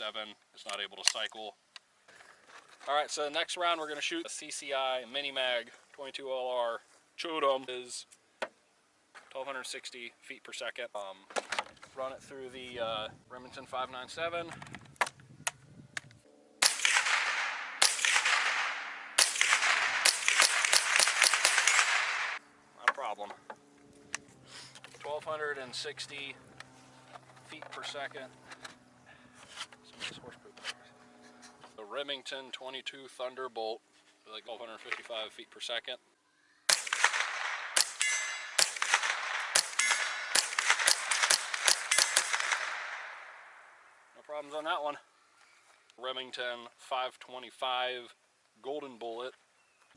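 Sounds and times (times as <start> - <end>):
rifle shots with echo: 16.6 - 22.4, 36.7 - 43.9
metallic ring: 38.0 - 38.6, 39.7 - 40.4.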